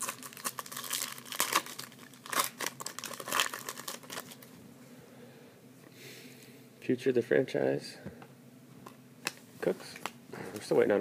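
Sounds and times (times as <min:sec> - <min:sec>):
foil wrapper tearing and crinkling: 0:00.0 - 0:04.4.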